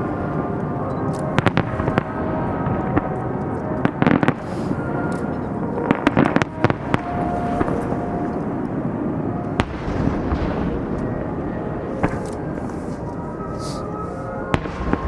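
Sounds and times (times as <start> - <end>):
fireworks crackling bangs: 1.4 - 4.9, 5.8 - 8.3, 9.6 - 15.0.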